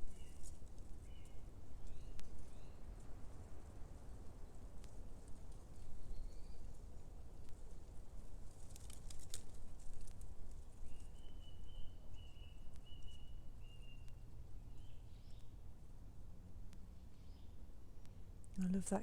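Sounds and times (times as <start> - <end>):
dry leaves rustling and crackling: 4.0 - 11.2.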